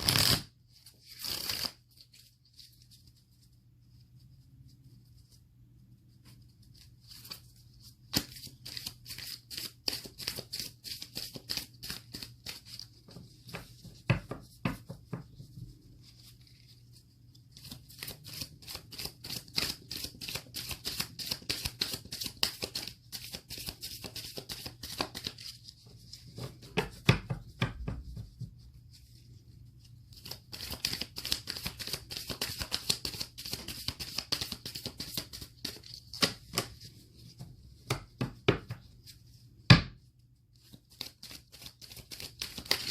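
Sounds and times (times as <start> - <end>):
cards being shuffled: 0.0 - 3.5, 6.3 - 15.5, 16.1 - 27.1, 30.1 - 36.9, 40.6 - 42.9.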